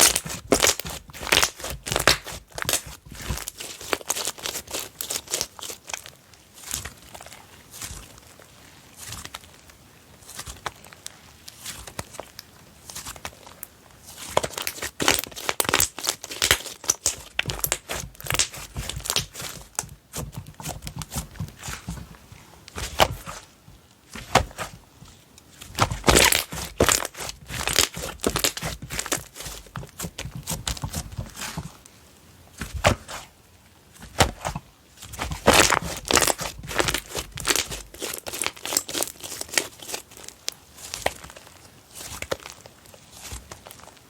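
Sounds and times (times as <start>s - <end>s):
slime squishing and popping: 0.0s - 8.1s, 14.1s - 22.0s, 22.7s - 23.4s, 24.1s - 25.0s, 25.6s - 31.6s, 34.0s - 42.6s.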